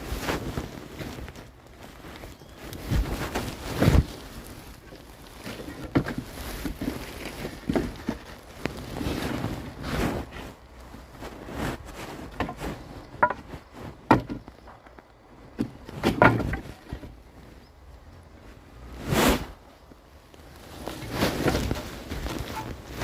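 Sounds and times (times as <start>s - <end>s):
boards and tools clattering: 4.8s - 8.8s, 12.2s - 17.2s.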